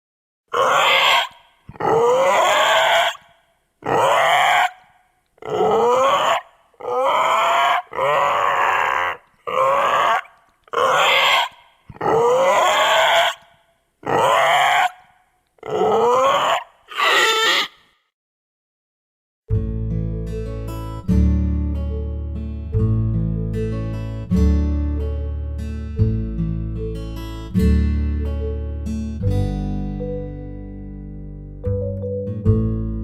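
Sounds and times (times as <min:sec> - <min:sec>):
creature cries rising in pitch: 0:00.5 - 0:17.9.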